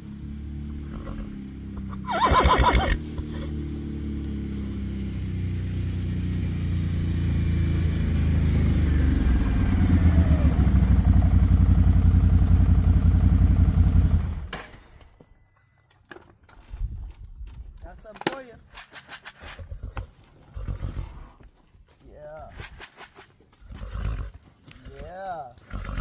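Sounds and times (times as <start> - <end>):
vehicle engine running: 0.0 - 14.5
horse whinny: 0.9 - 3.5, 19.6 - 21.4, 23.6 - 24.4, 25.6 - 26.0.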